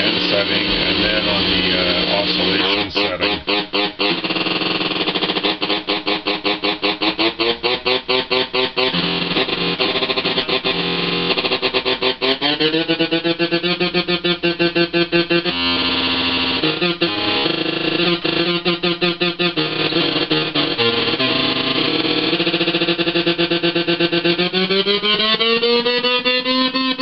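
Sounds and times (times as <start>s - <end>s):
fuzzed electric guitar: 0.0s - 27.0s.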